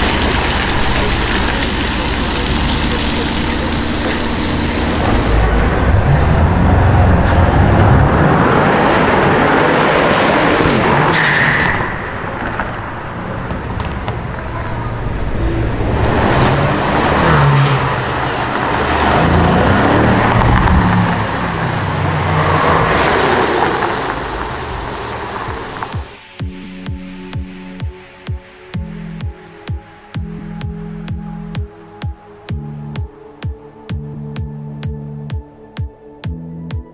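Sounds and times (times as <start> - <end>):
car engine accelerating: 0.0 - 26.3.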